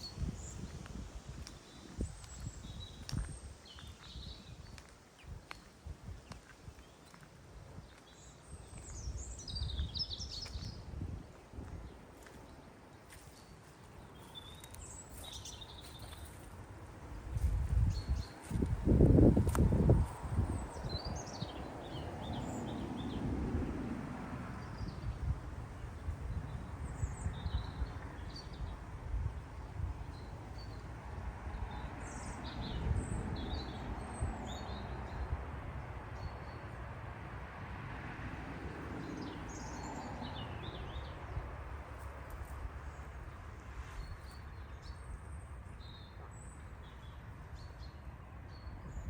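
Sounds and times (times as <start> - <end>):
small birds chirping: 11.8 - 16.5.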